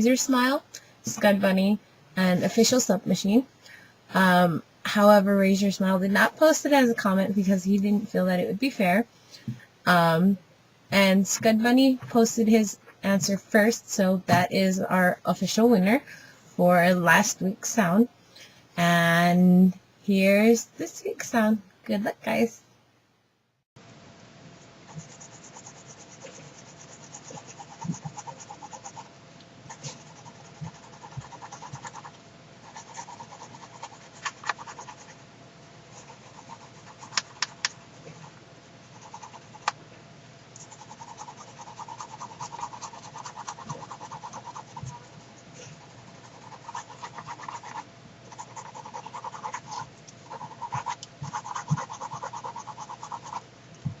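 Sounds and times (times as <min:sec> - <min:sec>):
pen writing on paper: 0:24.9 - 0:29.1, 0:29.7 - 0:32.1, 0:32.7 - 0:35.1, 0:40.6 - 0:53.4.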